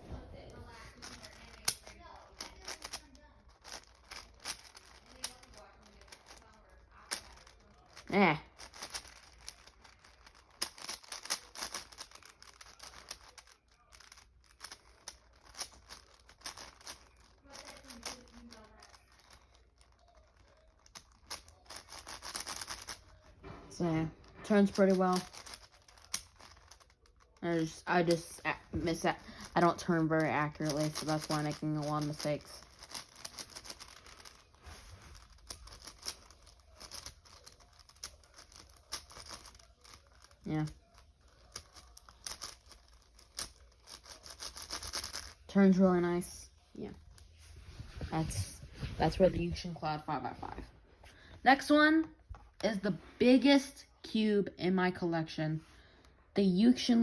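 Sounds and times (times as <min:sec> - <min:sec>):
puzzle cube clicking: 0:08.6 - 0:19.5.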